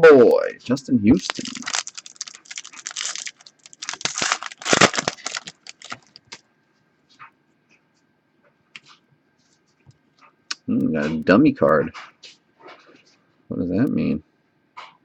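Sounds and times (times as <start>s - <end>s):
wrapper tearing and crinkling: 1.1s - 6.4s.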